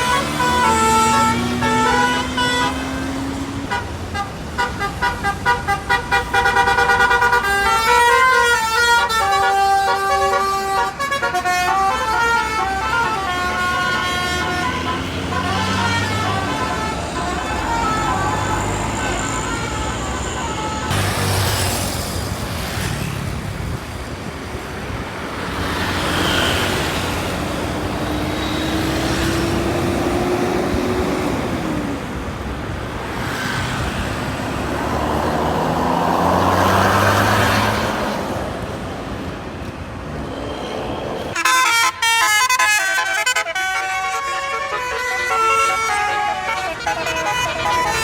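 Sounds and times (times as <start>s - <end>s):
bus horn playing fast tune: 0.0s - 21.3s, 41.4s - 48.0s
heavy vehicles passing: 0.0s - 48.0s.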